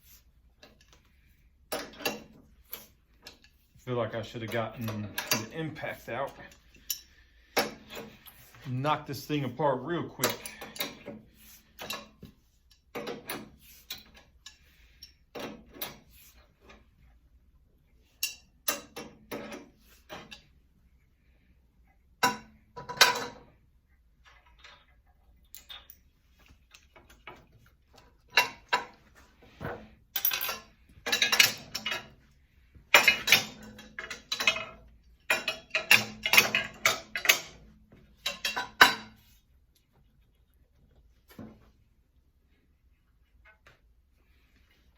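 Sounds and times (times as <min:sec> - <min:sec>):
metal clanks and knocks: 0:01.7 - 0:03.5, 0:04.2 - 0:08.4, 0:22.2 - 0:23.5, 0:28.2 - 0:32.2, 0:32.9 - 0:39.2.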